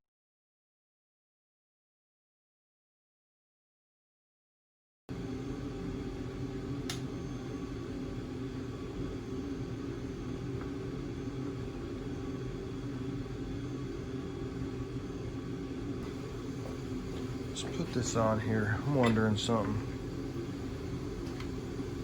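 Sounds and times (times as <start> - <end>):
low mechanical hum: 5.1 - 22.0.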